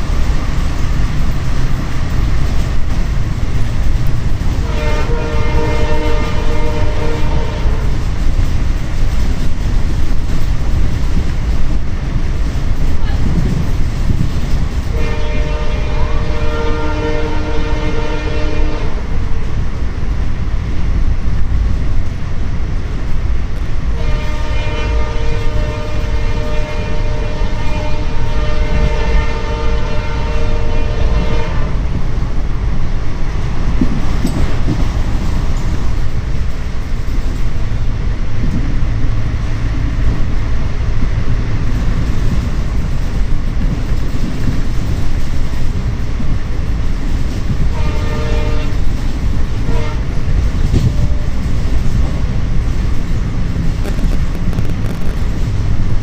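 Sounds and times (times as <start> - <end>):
train rumbling: 0.0 - 56.0
locomotive horn blasts: 4.6 - 8.0, 14.9 - 19.2, 23.9 - 31.8, 47.7 - 48.9, 49.6 - 51.4.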